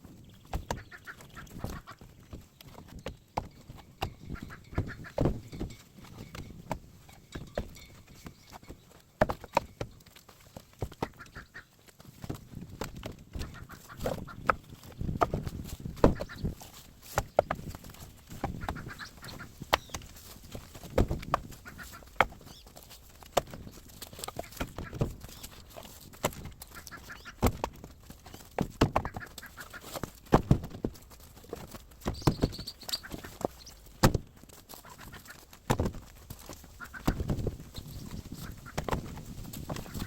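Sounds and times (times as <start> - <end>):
chickens clucking: 0.6 - 2.2, 4.1 - 5.5, 10.9 - 11.8, 13.4 - 22.7, 23.6 - 26.0, 26.6 - 27.5, 28.3 - 30.1, 32.1 - 33.8, 34.7 - 35.5, 36.5 - 40.0.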